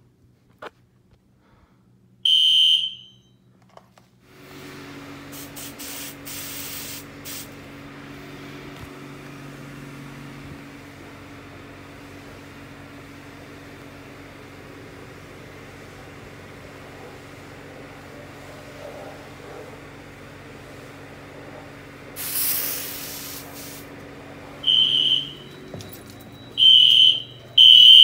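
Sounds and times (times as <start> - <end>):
smoke detector beep: 2.3 - 3.4, 24.6 - 28.0
short hissing sprays: 5.3 - 7.6, 22.2 - 23.9.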